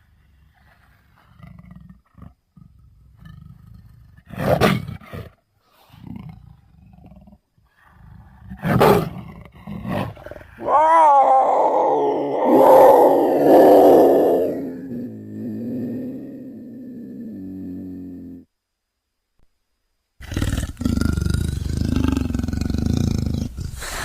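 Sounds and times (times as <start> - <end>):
leopard growling: 0.0 - 18.4, 20.2 - 24.0
leopard roars: 5.9 - 18.4.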